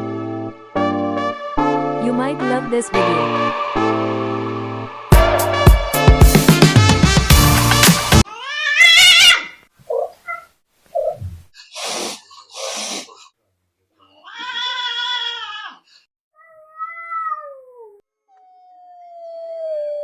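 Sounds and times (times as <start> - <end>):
music: 0.0 - 8.2
cat meowing: 8.3 - 11.2, 14.2 - 15.8, 16.4 - 19.4.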